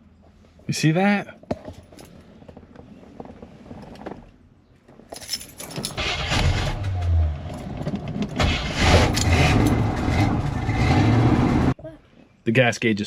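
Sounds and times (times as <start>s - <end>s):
keys jangling in ignition: 5.1s - 6.2s
car engine starting and running: 5.8s - 11.8s.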